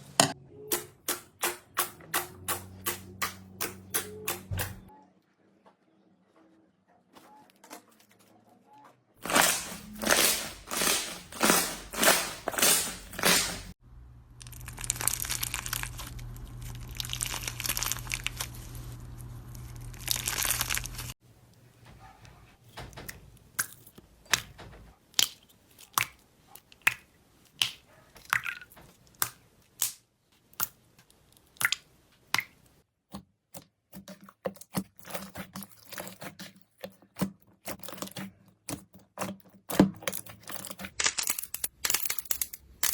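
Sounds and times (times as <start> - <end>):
crunchy slime squeezed by hand: 14.5 - 18.6.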